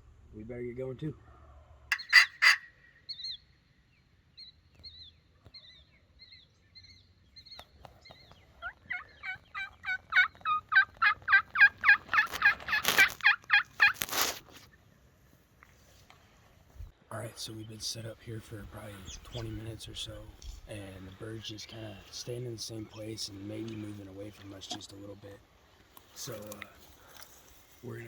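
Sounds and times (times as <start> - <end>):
turkey call yelps: 1.9 - 3.4, 8.6 - 14.1.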